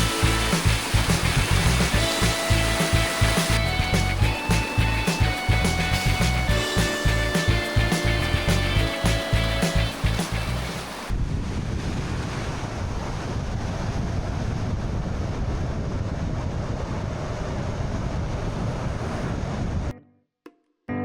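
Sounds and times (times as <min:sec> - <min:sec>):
mountain creek water rushing: 0:00.0 - 0:11.2
wind buffeting microphone: 0:00.0 - 0:19.9.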